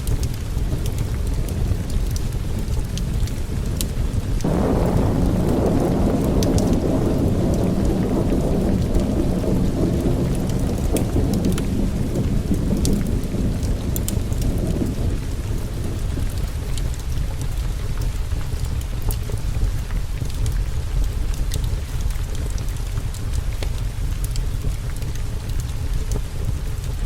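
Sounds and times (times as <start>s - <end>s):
sharp crackles: 0.0s - 20.6s
steady rain: 0.0s - 27.0s
thunder rumbling: 0.1s - 18.6s.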